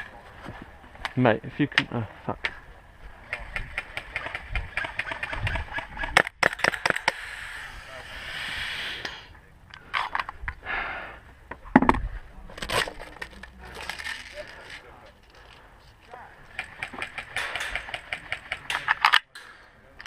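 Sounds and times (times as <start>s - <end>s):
rustling and scraping: 11.6s - 19.2s.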